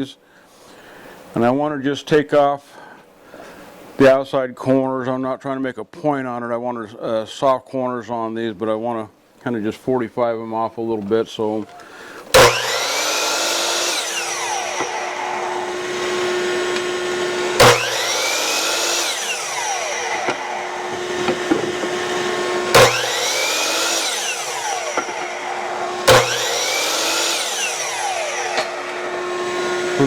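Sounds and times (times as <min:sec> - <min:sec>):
miter saw motor whining: 0:12.3 - 0:30.0.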